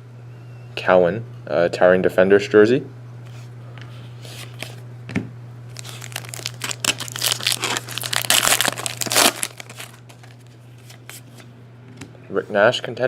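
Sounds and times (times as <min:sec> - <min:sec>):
steady low hum: 0:00.0 - 0:13.0
foil wrapper tearing and crinkling: 0:05.7 - 0:11.2.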